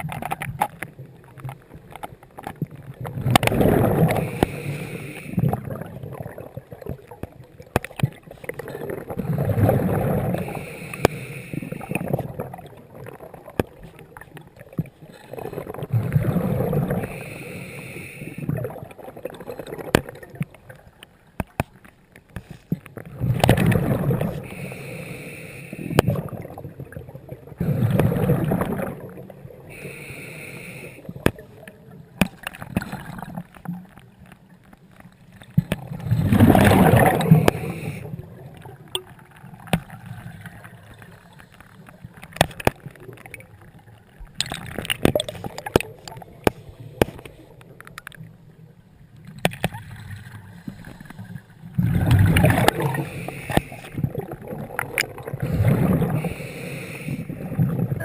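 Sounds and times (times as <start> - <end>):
exhaled bubbles underwater: 2.4 - 20.9, 23.0 - 33.8, 35.5 - 41.4, 49.2 - 58.0
regulator hiss on inhalation: 4.1 - 5.5, 10.4 - 12.0, 16.9 - 18.5, 24.4 - 26.2, 29.7 - 31.1, 37.2 - 38.2, 52.7 - 54.0, 56.1 - 57.3.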